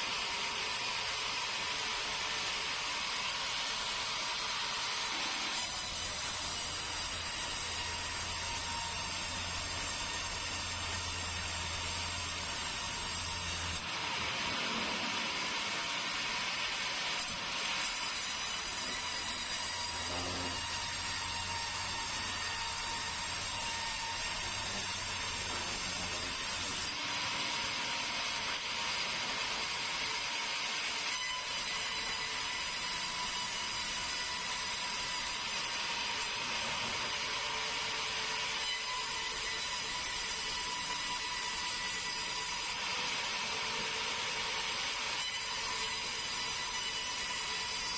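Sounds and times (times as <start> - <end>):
sawmill saw running: 0.0 - 47.9
hissy saw sound: 4.0 - 27.1.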